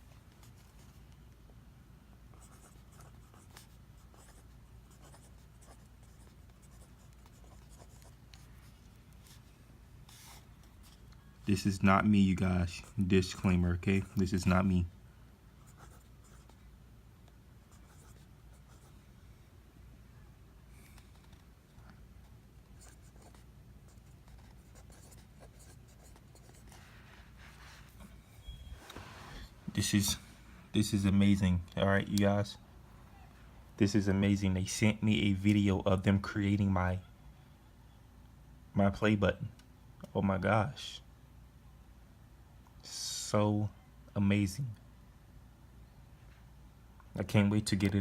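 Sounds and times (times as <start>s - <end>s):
low steady room hum: 0.0s - 48.0s
pen scratching on a surface: 2.4s - 8.5s
pen scratching on paper: 2.4s - 9.4s, 15.7s - 16.6s, 17.7s - 18.9s, 22.8s - 26.9s.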